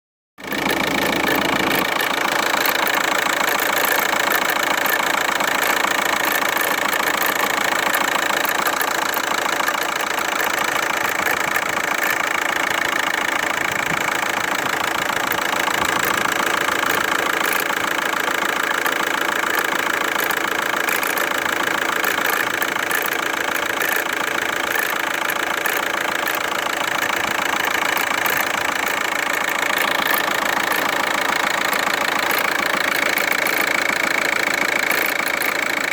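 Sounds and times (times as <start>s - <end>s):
engine running with rattling: 0.4s - 35.9s.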